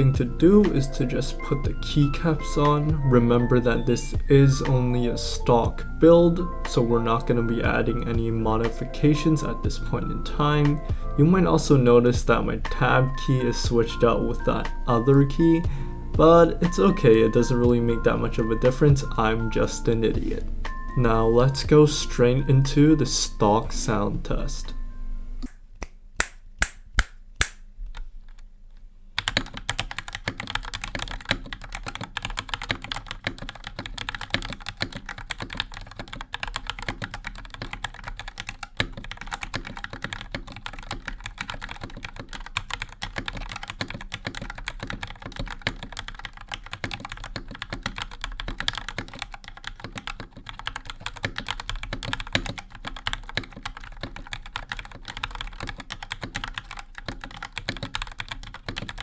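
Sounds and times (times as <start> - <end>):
mechanical keyboard typing: 29.2 - 59.0.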